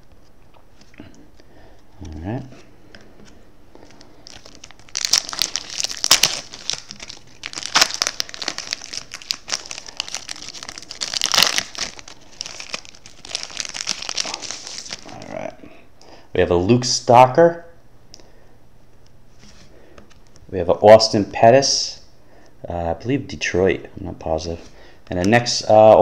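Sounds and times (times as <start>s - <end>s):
card pack wrapper tearing and crinkling: 3.8s - 15.3s.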